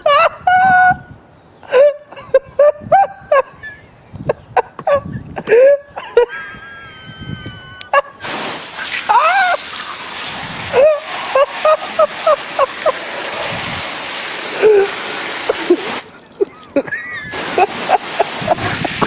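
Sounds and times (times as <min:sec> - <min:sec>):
wheezing laughter: 0:01.6 - 0:08.2, 0:08.9 - 0:10.0, 0:10.7 - 0:13.4, 0:14.5 - 0:19.0
steady hiss: 0:08.2 - 0:19.0.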